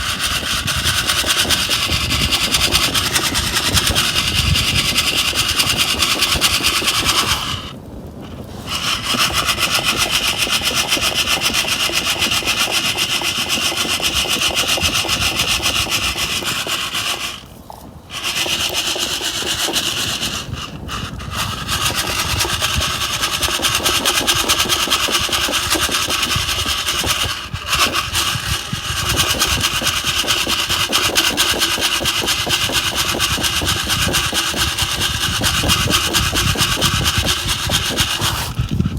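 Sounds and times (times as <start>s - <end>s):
coffee beans rattling in metal cup: 0.0s - 17.5s, 18.1s - 38.9s.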